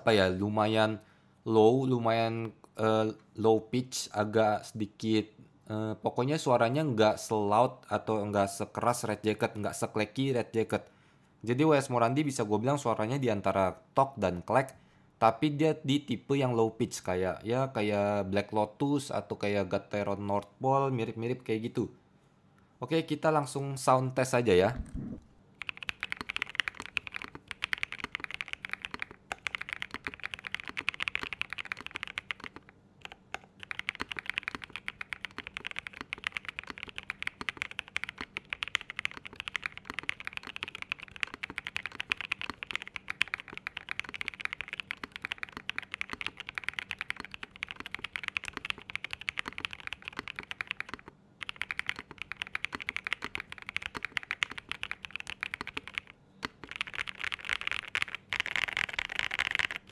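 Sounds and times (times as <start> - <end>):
fast typing on mechanical keyboard: 25.6 - 59.9.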